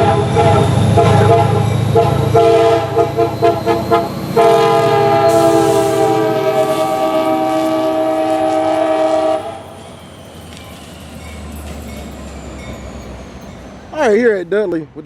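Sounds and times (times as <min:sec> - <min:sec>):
locomotive air horn chord: 0:00.0 - 0:09.7
locomotive rumbling on rails: 0:00.0 - 0:15.0.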